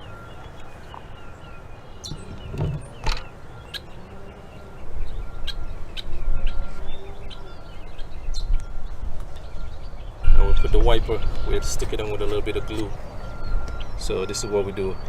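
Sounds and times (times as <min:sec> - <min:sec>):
small birds chirping: 0:00.0 - 0:15.0
low rumbling noise: 0:01.9 - 0:03.7.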